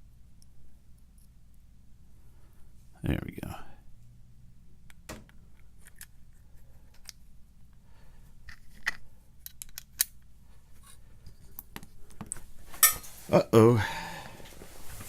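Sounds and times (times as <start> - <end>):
padlock parts clicking: 4.9 - 6.2, 8.4 - 10.3.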